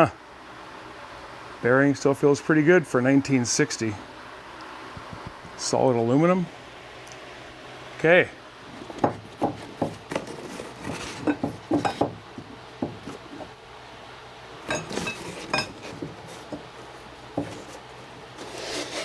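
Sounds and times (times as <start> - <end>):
metal tools clinking and clanking: 10.1 - 12.2, 14.6 - 18.1.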